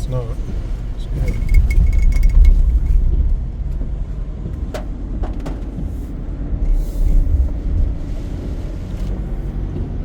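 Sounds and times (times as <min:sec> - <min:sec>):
vehicle rumble inside cabin: 0:00.0 - 0:10.0.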